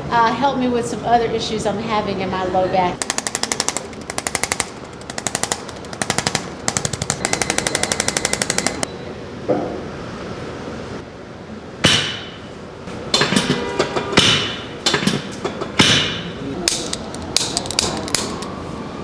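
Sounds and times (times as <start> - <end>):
activator instrument clicking: 3.0 - 8.9, 16.7 - 18.5.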